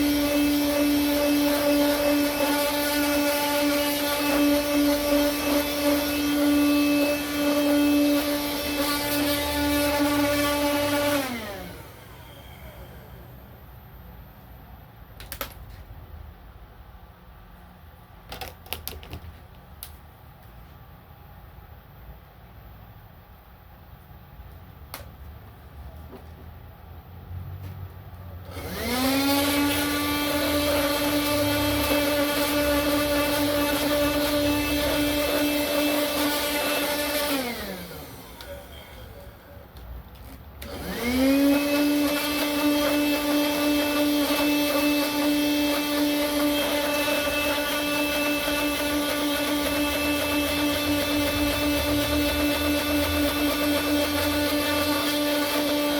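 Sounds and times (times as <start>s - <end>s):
vacuum cleaner motor whining: 0.0s - 13.5s, 28.4s - 55.9s.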